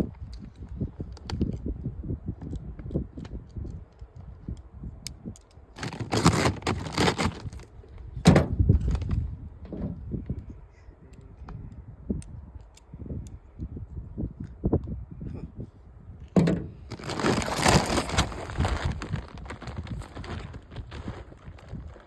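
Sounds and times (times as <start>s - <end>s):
knocks and thumps of bag and feeder: 5.8s - 7.6s, 16.4s - 22.0s
corn kernels pouring: 16.9s - 21.7s.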